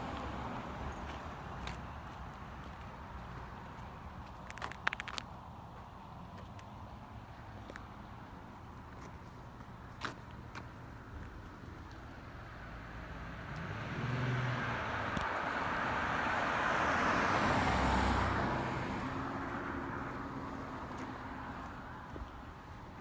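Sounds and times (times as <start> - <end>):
car driving past: 12.7 - 21.6.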